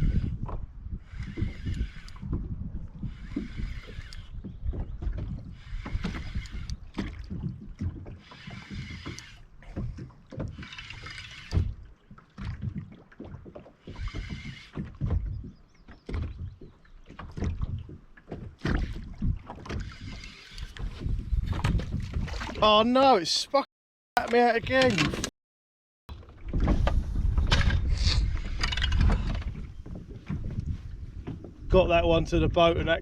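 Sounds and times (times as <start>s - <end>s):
wind rumble on microphone: 0.0s - 22.7s, 26.1s - 33.0s
fishing reel winding: 1.1s - 2.3s, 3.1s - 4.3s, 5.6s - 6.9s, 8.2s - 9.4s, 10.6s - 11.6s, 13.9s - 14.8s.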